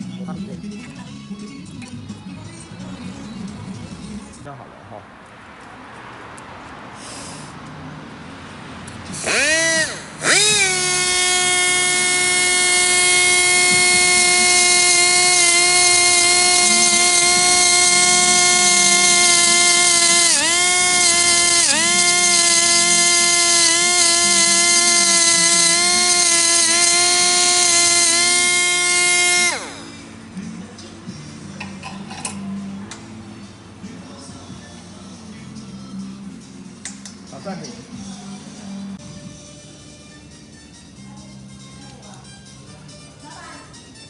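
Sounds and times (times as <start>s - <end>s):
water pump motor whining: 9.2s - 30.0s.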